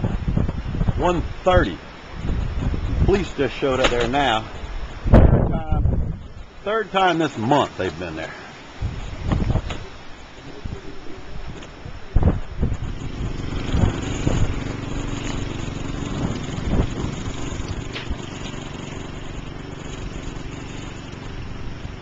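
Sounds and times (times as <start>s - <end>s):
low thumps: 11.4s - 22.0s
vehicle engine running: 12.3s - 22.0s.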